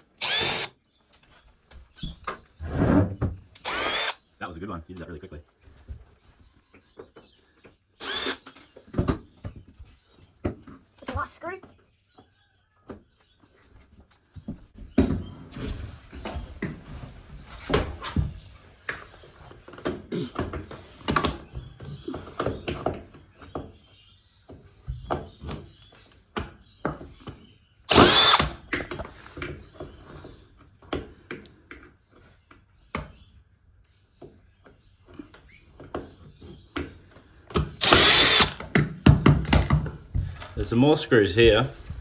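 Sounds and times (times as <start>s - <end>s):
electric screwdriver running: 0.2s - 0.7s, 3.6s - 4.2s, 8.0s - 8.5s, 27.9s - 28.6s, 37.8s - 38.7s.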